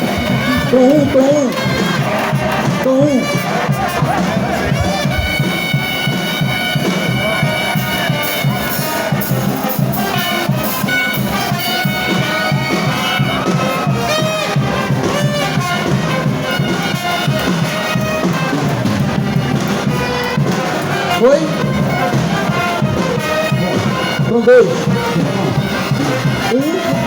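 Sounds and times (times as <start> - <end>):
brass band playing: 0.0 - 27.0.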